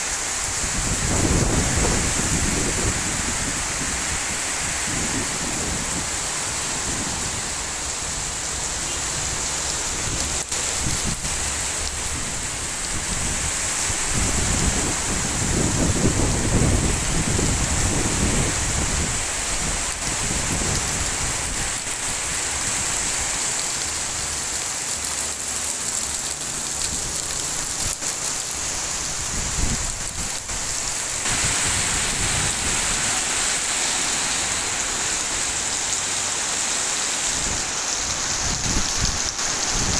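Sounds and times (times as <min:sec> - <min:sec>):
strong wind: 0:00.0 - 0:08.3, 0:09.9 - 0:21.8, 0:29.0 - 0:35.8, 0:37.2 - 0:39.9
heavy rain: 0:00.0 - 0:39.9.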